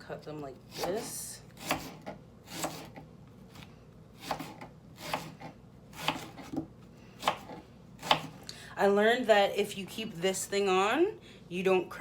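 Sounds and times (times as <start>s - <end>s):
knife slicing onion on board: 0.6s - 8.4s.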